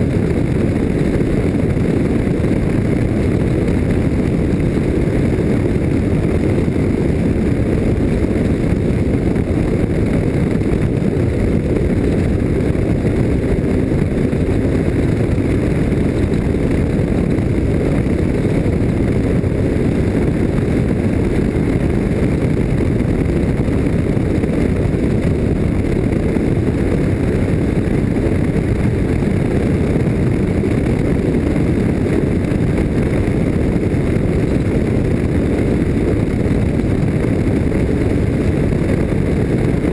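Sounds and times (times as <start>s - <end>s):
off-road vehicle engine rumble: 0.0s - 39.9s.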